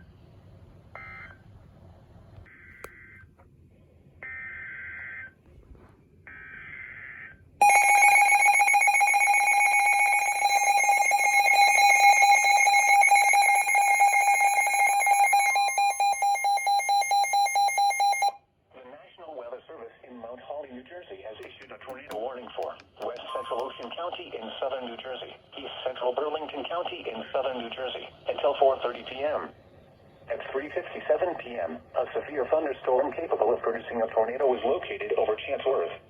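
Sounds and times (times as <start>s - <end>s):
data tone bursts: 7.6s - 18.3s
electronic alert alarm beep: 7.6s - 18.4s, 23.2s - 23.9s.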